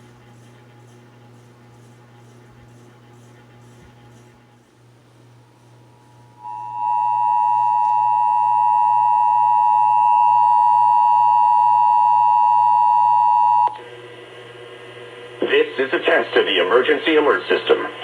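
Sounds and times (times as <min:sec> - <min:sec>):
faint low hum: 0:00.0 - 0:18.0
dual-tone alert alarm: 0:06.4 - 0:13.7.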